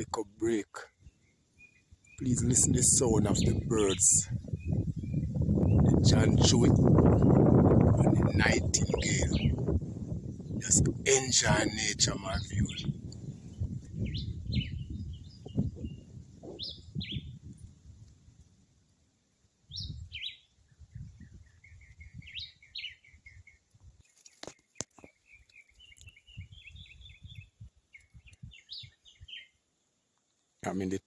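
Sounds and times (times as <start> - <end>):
bird song with falling notes: 8.2 - 10.6, 12.2 - 17.5, 19.7 - 29.6.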